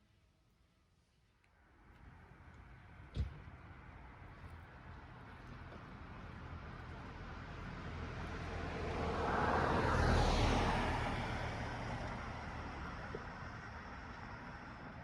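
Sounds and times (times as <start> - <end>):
vehicle passing by: 7.6 - 13.1.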